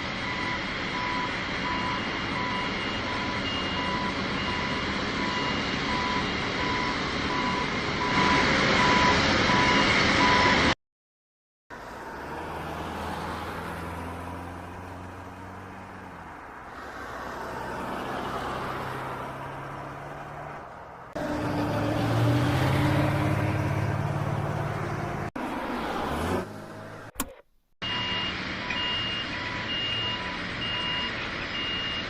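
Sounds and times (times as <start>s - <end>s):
heavy vehicle engine running: 0.0s - 10.8s, 11.7s - 25.4s
engine revving: 11.7s - 27.3s.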